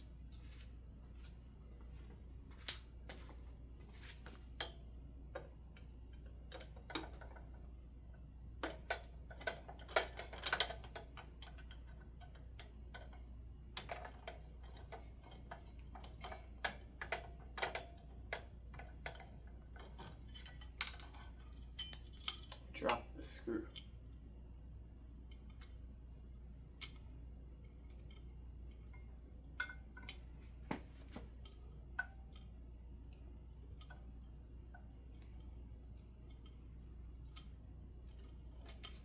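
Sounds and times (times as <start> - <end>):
small metallic clicks and taps: 4.6 - 7.7, 8.6 - 23.0, 25.2 - 25.8, 26.8 - 39.0.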